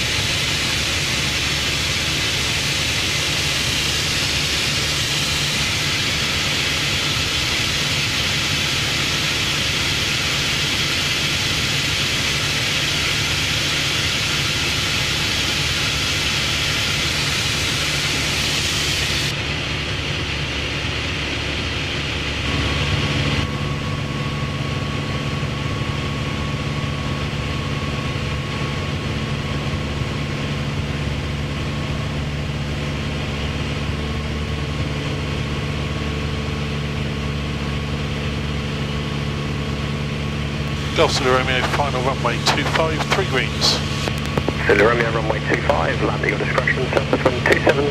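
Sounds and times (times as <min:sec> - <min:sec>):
light aircraft piston engine: 0:00.0 - 0:47.9
airflow noise: 0:40.0 - 0:47.9.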